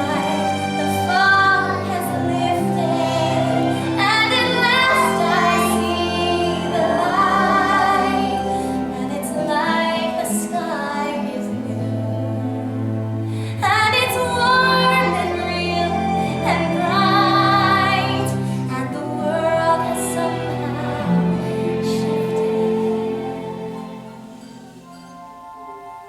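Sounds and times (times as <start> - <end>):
instrumental backing: 0.0 - 26.0.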